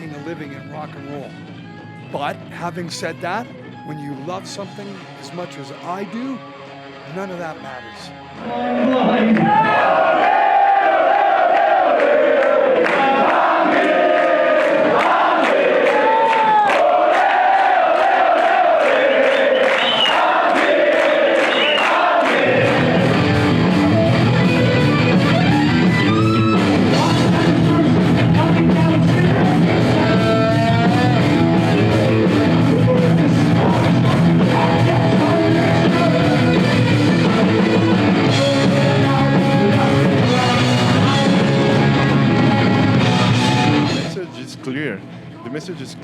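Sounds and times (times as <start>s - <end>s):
heavy metal band playing: 22.3s - 44.2s
person singing: 26.9s - 31.2s, 32.4s - 37.5s, 38.3s - 44.0s.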